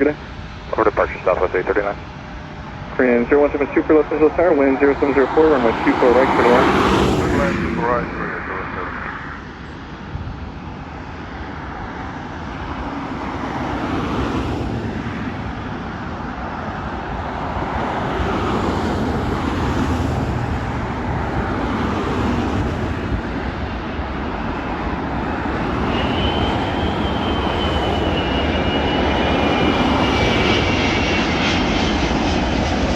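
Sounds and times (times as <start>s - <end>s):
high jet whine: 0.0s - 32.9s
jet engine rumble: 0.0s - 32.9s.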